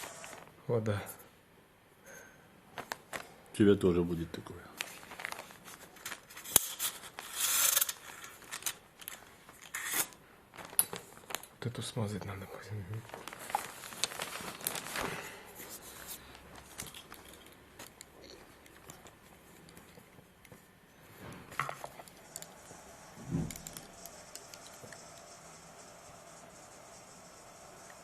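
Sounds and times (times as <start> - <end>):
rustling: 4.8 - 11.6, 12.9 - 27.8.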